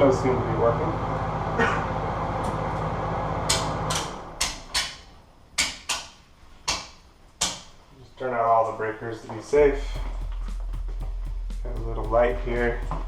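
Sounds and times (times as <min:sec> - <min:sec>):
low electrical hum: 0:00.0 - 0:13.0
circuit breakers clicking off: 0:00.4 - 0:07.7.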